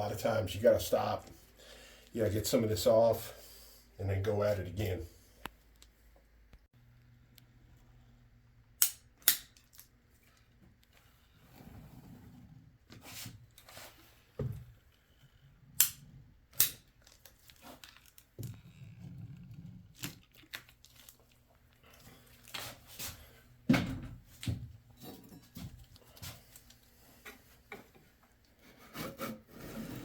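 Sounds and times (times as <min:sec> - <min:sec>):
sharp clicks and knocks of tools: 0:08.8 - 0:09.9, 0:16.6 - 0:16.9
rustling and scraping: 0:10.2 - 0:15.1.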